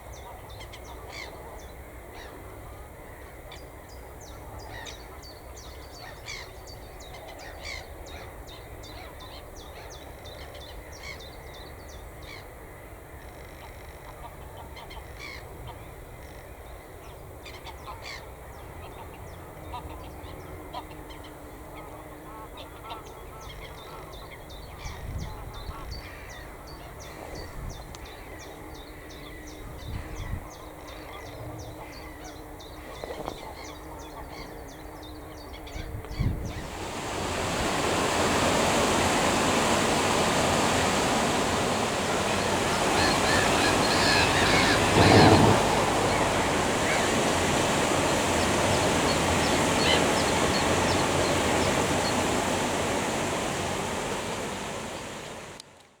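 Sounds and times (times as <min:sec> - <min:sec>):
waterbird calls: 0:36.5 - 0:55.6
geese honking: 0:36.6 - 0:55.4
loud steady rushing noise: 0:36.6 - 0:55.6.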